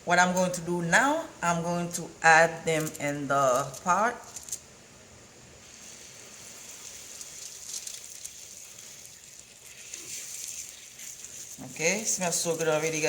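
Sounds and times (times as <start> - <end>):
fish sizzling in butter: 5.6 - 13.0.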